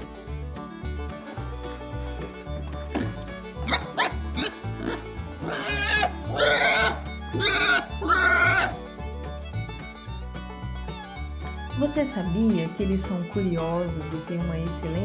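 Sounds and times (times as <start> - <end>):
pigs squealing: 2.9 - 8.8.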